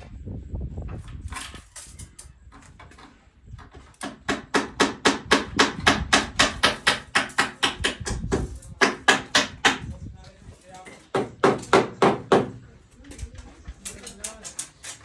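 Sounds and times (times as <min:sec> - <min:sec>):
hammer blows on bamboo frame: 0:03.6 - 0:10.0, 0:11.0 - 0:12.7.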